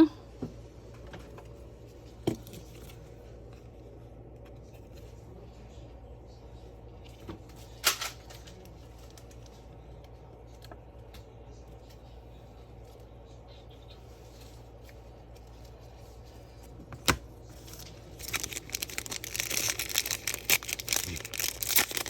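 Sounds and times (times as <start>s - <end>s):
steady low hum: 0.0s - 22.0s
cards rustling: 14.5s - 22.0s.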